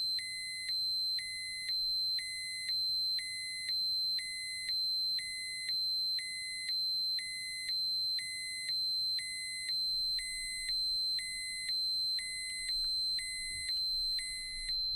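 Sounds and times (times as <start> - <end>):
electronic alarm beeps: 8.2 - 14.9.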